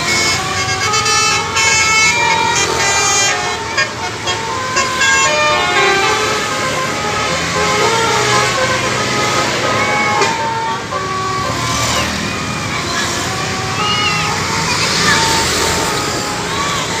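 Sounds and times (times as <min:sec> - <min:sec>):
low bus noise: 0:00.0 - 0:17.0
musical air horn playing a tune: 0:00.1 - 0:12.1.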